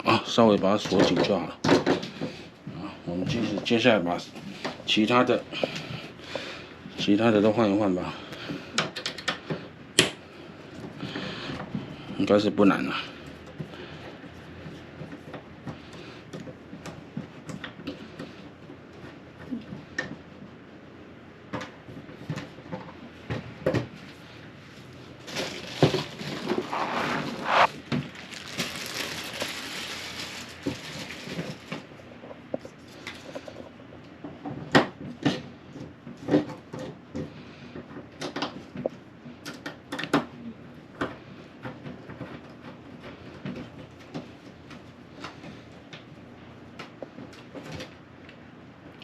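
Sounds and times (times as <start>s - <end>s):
rustling noise: 24.6s - 31.9s.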